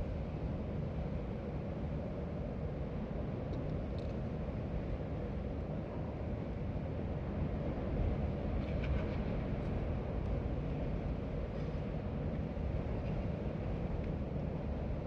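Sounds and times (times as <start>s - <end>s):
wind with low rumble: 0.0s - 15.0s.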